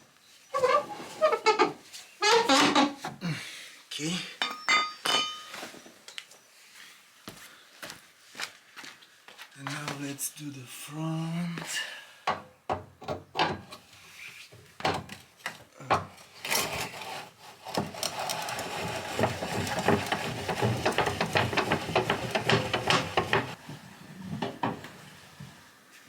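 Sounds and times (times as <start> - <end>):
crank grinding rattle: 17.6 - 23.6
knocks: 19.2 - 23.6.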